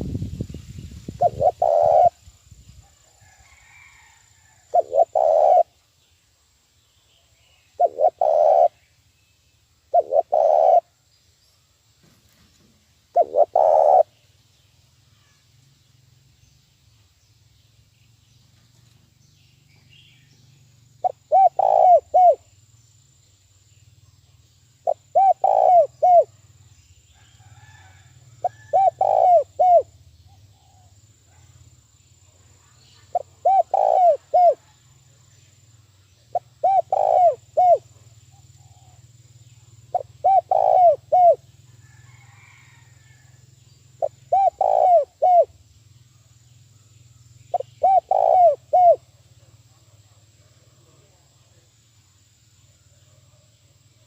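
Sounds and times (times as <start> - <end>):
dove cooing: 1.2 - 2.2, 4.6 - 5.7, 7.8 - 8.8, 9.9 - 10.9, 13.1 - 14.1, 21.0 - 22.5, 24.8 - 26.3, 28.5 - 29.9, 33.1 - 34.7, 36.3 - 37.8, 39.9 - 41.4, 44.0 - 45.5, 47.5 - 50.6.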